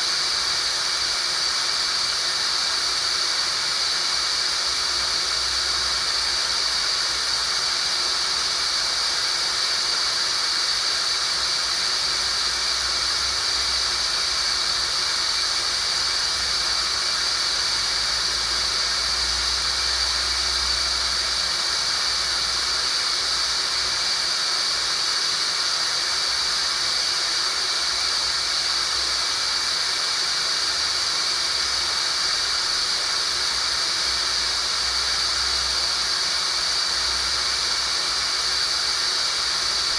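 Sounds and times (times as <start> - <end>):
electronic hiss with high whistle: 0.0 - 39.9.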